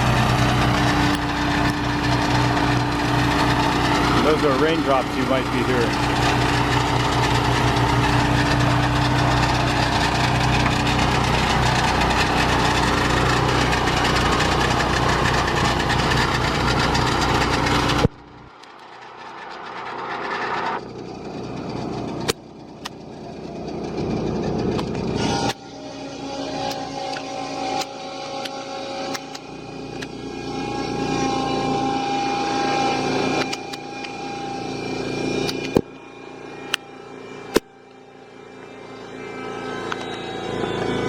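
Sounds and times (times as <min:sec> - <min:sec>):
sawmill engine running: 0:00.0 - 0:41.0
sharp clicks: 0:27.8 - 0:30.1, 0:33.4 - 0:34.2, 0:35.5 - 0:35.9.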